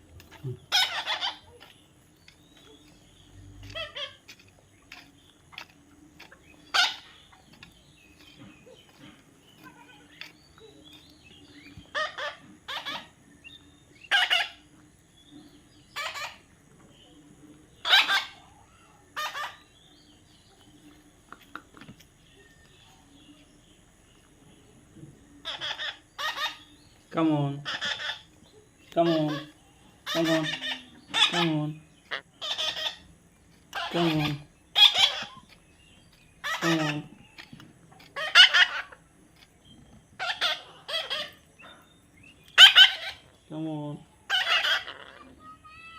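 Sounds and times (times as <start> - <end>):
baby parrot squawking: 0.3 - 1.8, 3.6 - 7.6, 11.6 - 13.2, 14.0 - 14.6, 15.9 - 16.5, 17.8 - 19.7, 25.4 - 26.8, 27.6 - 28.3, 29.0 - 33.1, 33.7 - 35.6, 36.4 - 39.0, 40.2 - 41.4, 42.5 - 43.3, 44.3 - 45.9.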